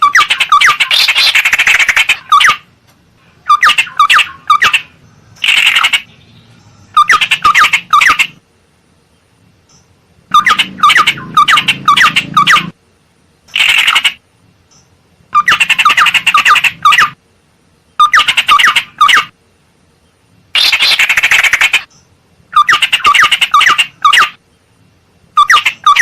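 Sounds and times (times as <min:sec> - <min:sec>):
bird harsh chattering: 0:00.0 - 0:02.7, 0:03.4 - 0:06.2, 0:06.9 - 0:08.4, 0:10.3 - 0:12.8, 0:13.5 - 0:14.2, 0:15.3 - 0:17.2, 0:18.0 - 0:19.4, 0:20.6 - 0:21.9, 0:22.5 - 0:24.4, 0:25.4 - 0:26.0
bird repeated loud notes: 0:10.3 - 0:12.8.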